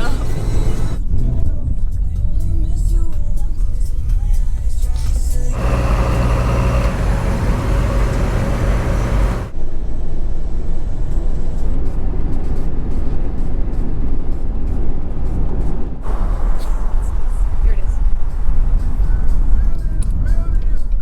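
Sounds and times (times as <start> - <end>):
car engine and tyre rumble: 0.0 - 1.0, 5.5 - 9.5.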